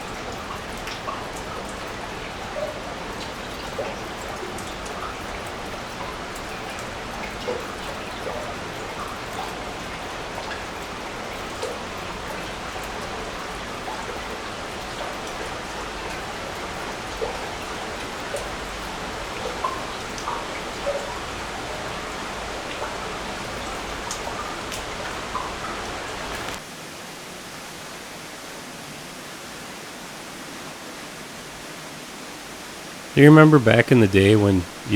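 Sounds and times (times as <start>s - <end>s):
meltwater dripping and plopping: 0.1s - 26.6s.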